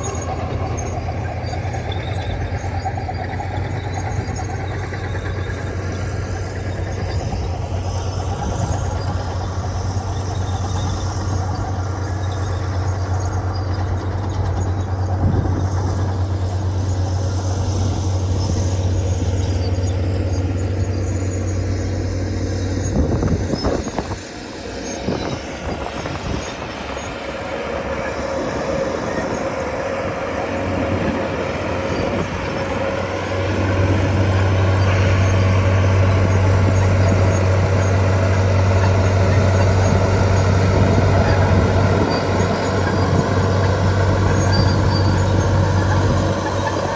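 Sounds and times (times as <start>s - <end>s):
bulldozer diesel engines droning: 0.0s - 46.9s
high steady whine: 17.8s - 46.9s.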